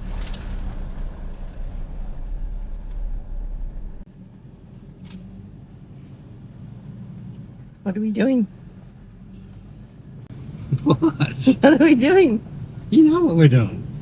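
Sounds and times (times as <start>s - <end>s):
vehicle rumbling: 0.0s - 14.0s.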